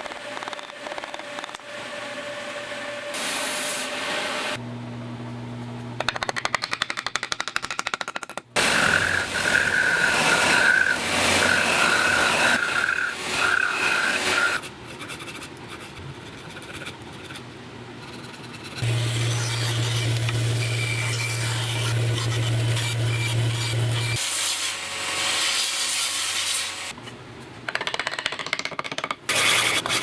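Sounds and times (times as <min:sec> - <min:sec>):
power grinder on metal: 0:08.6 - 0:14.6, 0:18.8 - 0:24.2.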